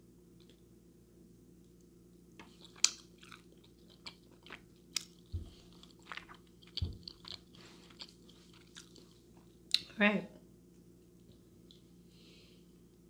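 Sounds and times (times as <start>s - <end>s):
crunchy chewing: 2.4s - 9.8s.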